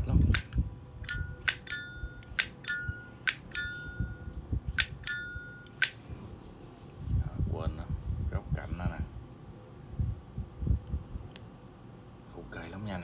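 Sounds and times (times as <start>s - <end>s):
lighter lid clicking open and shut: 0.2s - 3.7s, 4.8s - 6.0s.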